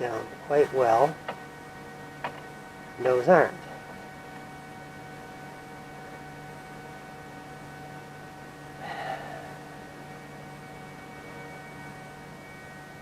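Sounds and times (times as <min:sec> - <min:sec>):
steady hum of faint tones: 0:00.0 - 0:13.0.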